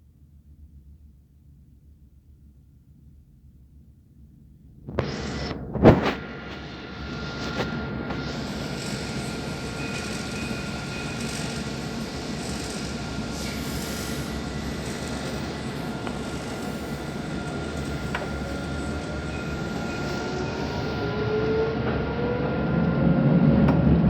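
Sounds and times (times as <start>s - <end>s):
tram rumble: 5.0s - 24.0s
whine rising in pitch: 13.1s - 24.0s.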